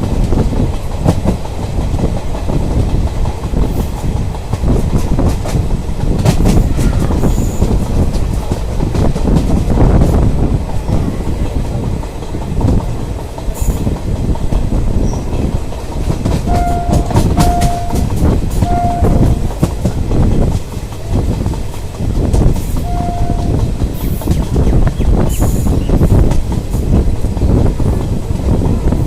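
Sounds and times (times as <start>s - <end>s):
train wheels rumbling and clacking: 0.0s - 29.0s
train horn blasts: 16.5s - 19.5s, 22.8s - 23.6s.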